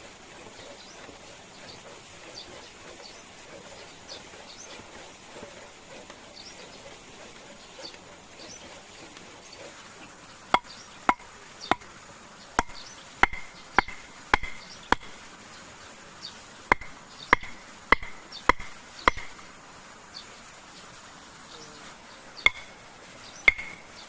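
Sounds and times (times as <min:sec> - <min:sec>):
blade chopping into wood: 0:10.6 - 0:11.9, 0:12.6 - 0:15.2, 0:16.7 - 0:19.5, 0:23.5 - 0:23.8.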